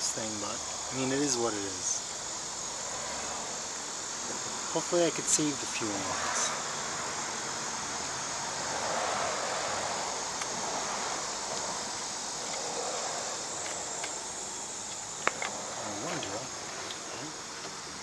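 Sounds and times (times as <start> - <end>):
crickets chirring: 0.0 - 18.0.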